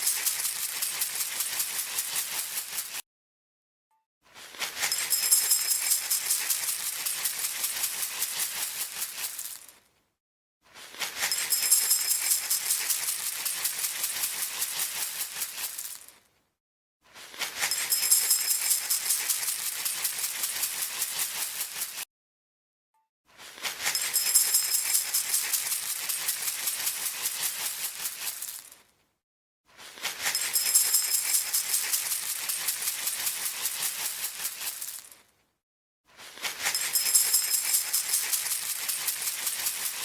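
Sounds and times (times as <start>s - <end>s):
rapid shaking rattle: 0.0s - 3.0s, 4.8s - 9.7s, 11.2s - 16.1s, 17.6s - 22.0s, 23.8s - 28.8s, 30.1s - 35.2s, 36.6s - 40.0s
faint high jingle: 4.8s - 6.3s, 11.2s - 12.6s, 17.6s - 19.2s, 23.9s - 25.2s, 30.3s - 31.6s, 36.6s - 38.4s.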